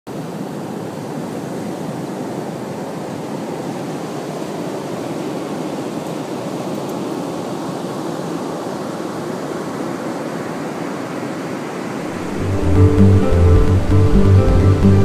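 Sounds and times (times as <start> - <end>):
ocean surf breaking: 7.1 - 15.0.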